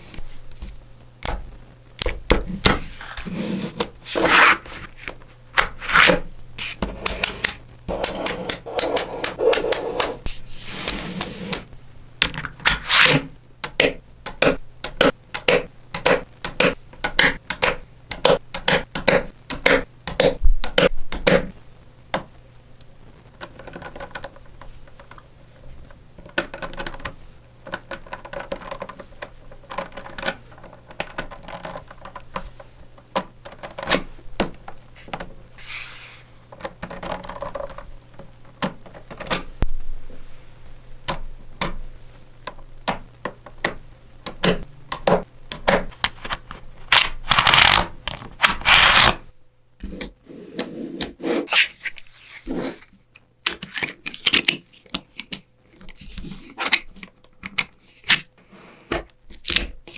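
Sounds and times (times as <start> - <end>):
rubbing and scraping: 2.5 - 11.7, 47.3 - 53.0
magnetic balls clicking: 13.6 - 25.2, 41.0 - 47.9.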